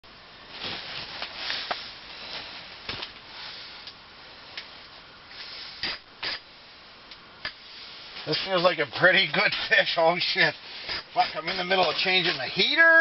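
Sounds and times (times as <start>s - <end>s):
rustling: 0.5s - 6.4s.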